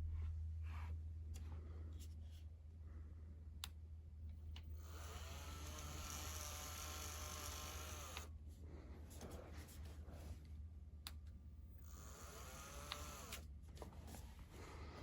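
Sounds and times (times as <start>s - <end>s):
standing desk lift motor: 4.8s - 8.3s, 11.8s - 13.5s.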